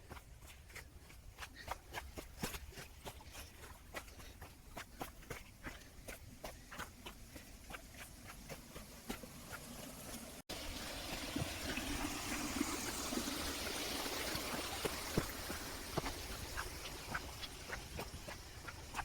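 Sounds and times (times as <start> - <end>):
footsteps walking: 0.0 - 19.0
stream water rushing: 6.8 - 19.0.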